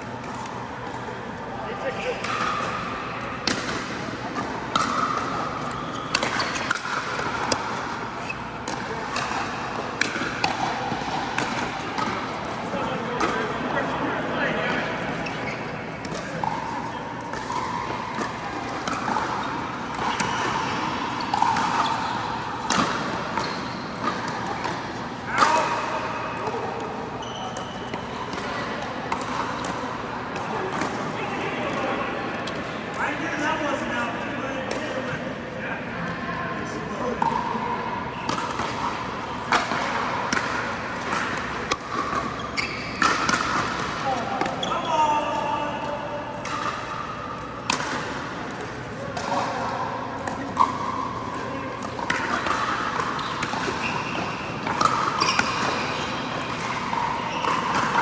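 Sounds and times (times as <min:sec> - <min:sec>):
steady background noise: 0:00.0 - 0:58.0.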